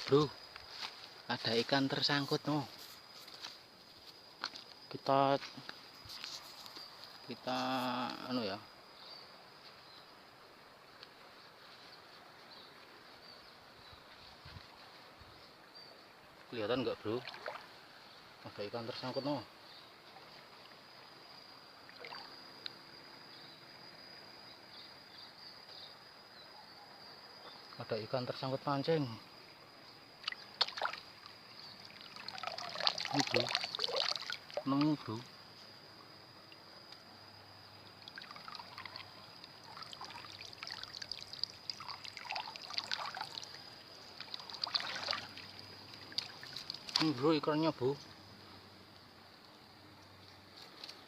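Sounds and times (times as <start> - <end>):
low steady hiss: 0.0 - 51.0
water trickling and splashing: 16.3 - 19.1, 19.9 - 22.7, 30.2 - 35.2, 37.8 - 47.8
high-pitched insect drone: 27.3 - 48.8.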